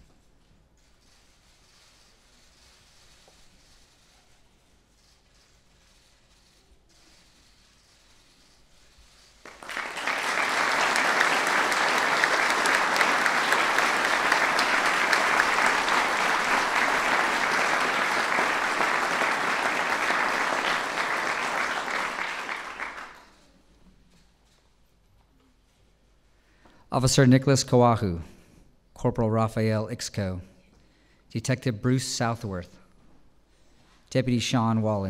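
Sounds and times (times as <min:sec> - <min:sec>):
audience applauding: 0:09.4 - 0:23.4.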